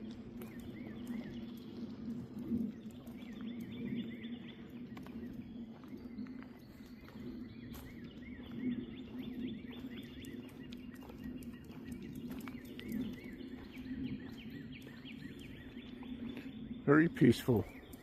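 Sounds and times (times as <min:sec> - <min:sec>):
songbird chirping: 0:00.0 - 0:18.0.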